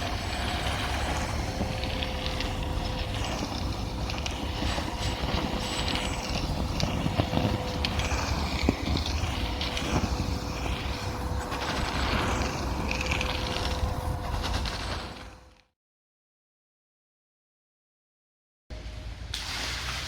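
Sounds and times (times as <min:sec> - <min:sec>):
vacuum cleaner running: 0:00.0 - 0:15.4.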